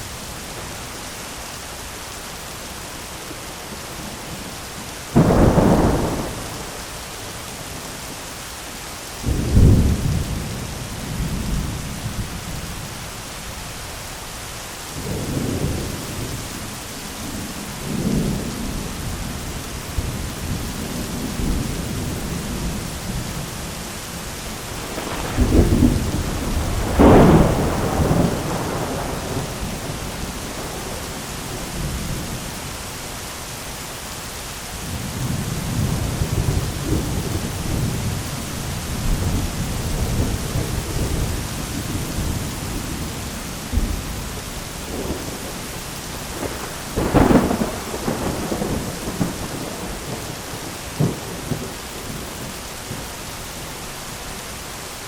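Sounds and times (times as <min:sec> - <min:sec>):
heavy rain on an umbrella: 0:00.0 - 0:55.0
thunder: 0:05.1 - 0:06.8, 0:24.8 - 0:32.4, 0:34.9 - 0:45.6, 0:46.3 - 0:52.2.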